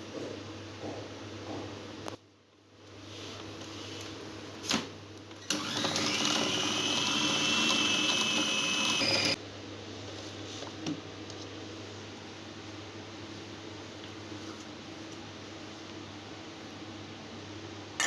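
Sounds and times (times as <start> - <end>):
electric grinder motor whine: 5.5 - 9.4.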